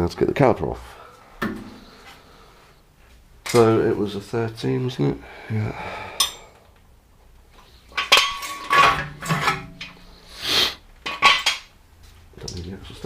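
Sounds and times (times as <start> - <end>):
metal tools clinking: 6.2 - 6.5, 7.9 - 10.1.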